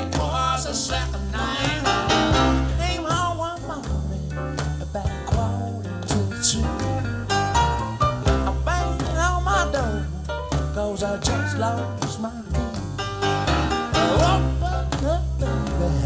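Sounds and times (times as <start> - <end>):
bluesy rock song over loudspeakers: 13.3 - 15.2.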